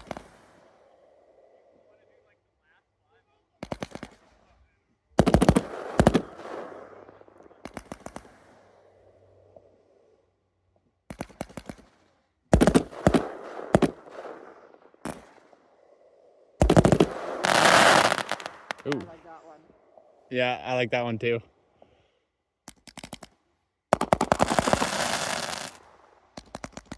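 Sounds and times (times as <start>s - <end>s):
fireworks banging: 0.0s - 0.7s, 5.2s - 9.1s, 12.6s - 15.6s, 16.6s - 19.8s, 23.9s - 26.9s.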